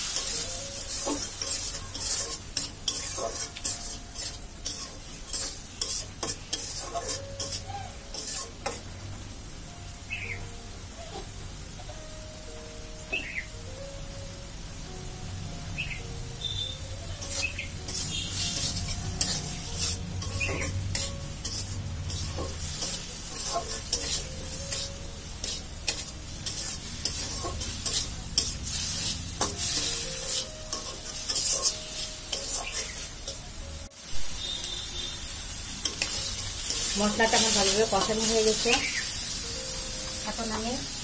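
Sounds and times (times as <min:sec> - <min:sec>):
spatula scraping a pan: 0:00.0 - 0:08.9, 0:17.2 - 0:33.4, 0:35.8 - 0:39.1
spices sizzling in a pan: 0:00.0 - 0:41.0.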